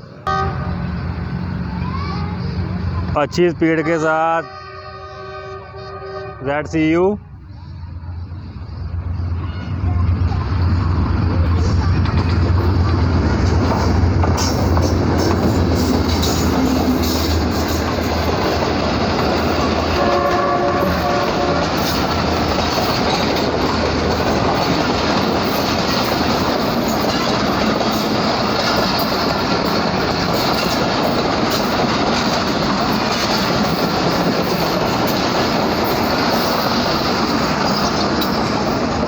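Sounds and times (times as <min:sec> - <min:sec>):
train rumbling past: 0:00.0 - 0:39.0
locomotive horn: 0:00.3 - 0:01.0, 0:04.3 - 0:06.7, 0:19.6 - 0:22.1
wheels clacking over rail joints: 0:09.2 - 0:39.0.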